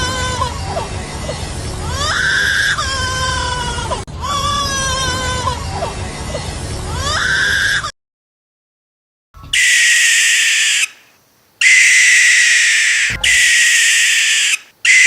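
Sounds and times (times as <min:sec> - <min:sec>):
bird wailing call: 0:09.5 - 0:11.0, 0:11.6 - 0:15.0
bird hissing screeches: 0:09.5 - 0:15.0.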